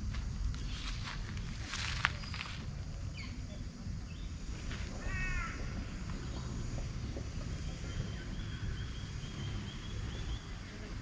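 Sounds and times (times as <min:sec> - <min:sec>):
steady low rumble: 0:00.0 - 0:11.0.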